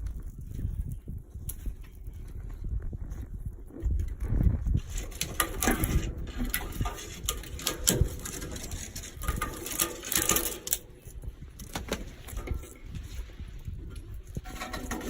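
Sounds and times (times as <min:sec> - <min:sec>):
wind buffeting microphone: 0:00.0 - 0:15.0
dry sticks crackling: 0:03.6 - 0:15.0.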